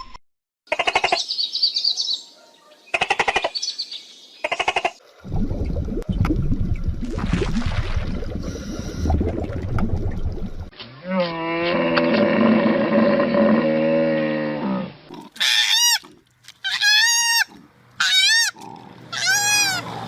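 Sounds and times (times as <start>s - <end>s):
low rumbling noise: 5.2s - 10.7s.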